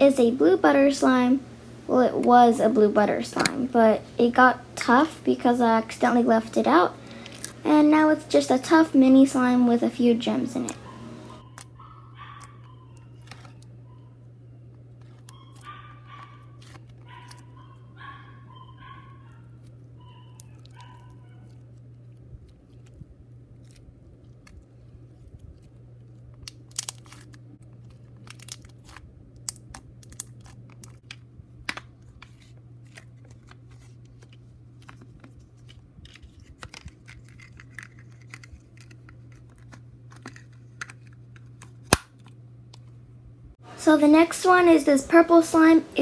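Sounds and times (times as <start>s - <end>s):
steady low hum: 0.0s - 11.5s, 41.2s - 46.0s.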